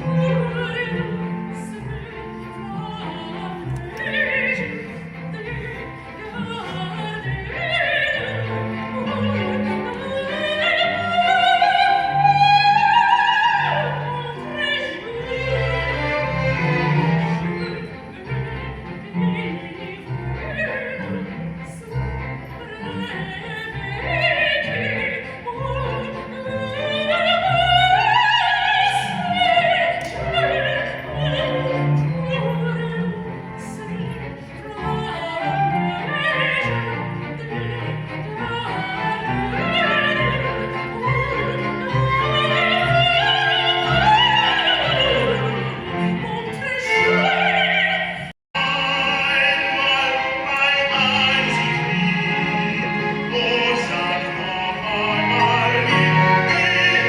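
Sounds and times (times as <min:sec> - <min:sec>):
operatic voice singing: 0:00.0 - 0:57.0
orchestral accompaniment: 0:00.0 - 0:57.0.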